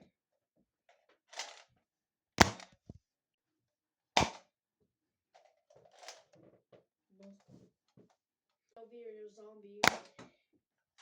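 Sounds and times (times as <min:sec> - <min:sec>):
foam dart blaster pops: 0:02.4 - 0:02.8, 0:04.2 - 0:04.5, 0:09.8 - 0:10.2.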